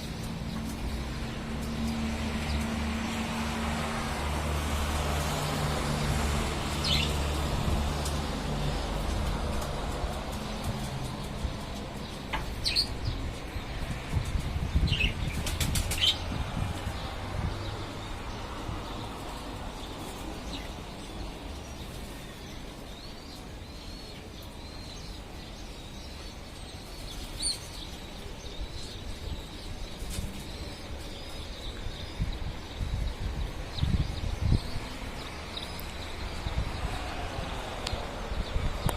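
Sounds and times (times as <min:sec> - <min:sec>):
wind rumble on microphone: 0:00.0 - 0:21.1, 0:28.2 - 0:38.9
pigeons flapping wings: 0:15.3 - 0:16.2.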